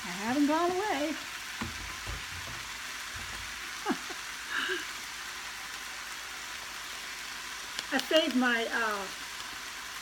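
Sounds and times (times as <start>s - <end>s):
meat sizzling in a frying pan: 0.0s - 10.0s
sharp knock: 1.6s - 3.5s
dull thumps: 1.6s - 3.6s.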